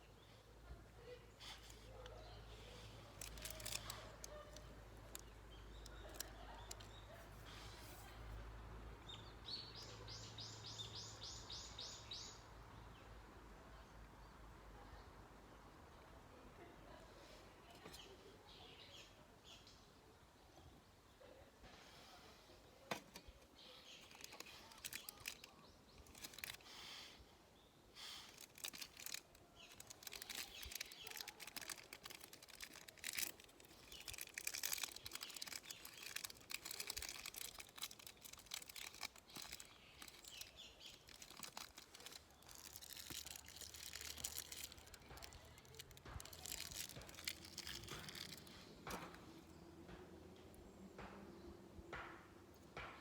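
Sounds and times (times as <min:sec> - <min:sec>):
rustling and crinkling: 0:01.4 - 0:08.2, 0:23.0 - 0:27.1, 0:28.0 - 0:50.1
small irregular clicks: 0:01.5 - 0:07.1, 0:22.9 - 0:27.2, 0:28.0 - 0:50.6.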